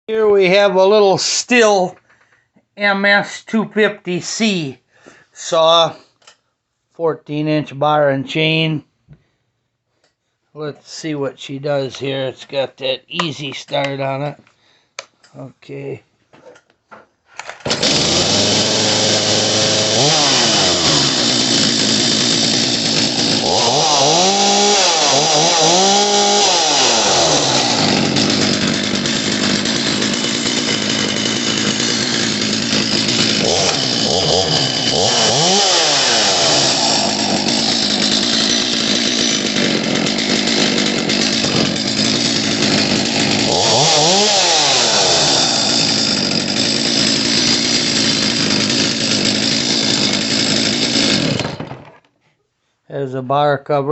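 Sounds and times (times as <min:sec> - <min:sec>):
chainsaw revving: 0:17.6 - 0:52.0.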